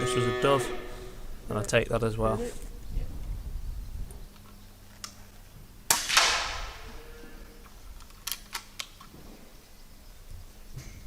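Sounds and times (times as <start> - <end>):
air rifle shot cracks: 5.9 - 6.8.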